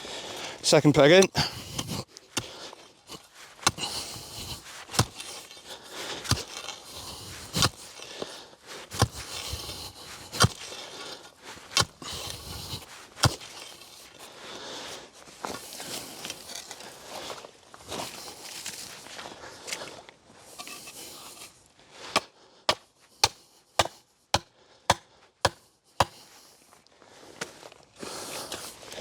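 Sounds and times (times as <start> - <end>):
peg being hammered into ground: 3.6 - 5.3, 7.5 - 7.8, 8.9 - 9.7, 22.2 - 26.2
rustling and scraping: 20.5 - 21.6.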